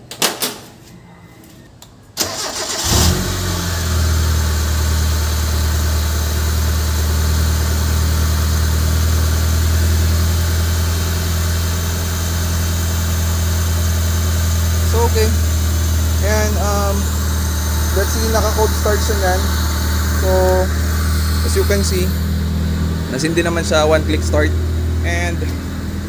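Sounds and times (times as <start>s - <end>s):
starter cranking engine: 2.2s - 5.9s, 14.6s - 22.5s
petrol engine fast idle: 2.2s - 26.0s.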